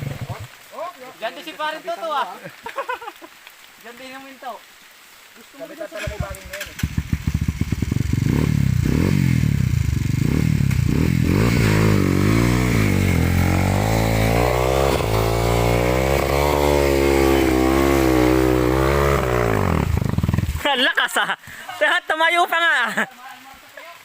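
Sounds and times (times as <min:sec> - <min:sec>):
motorcycle engine revving: 0:00.0 - 0:00.6, 0:06.0 - 0:20.6.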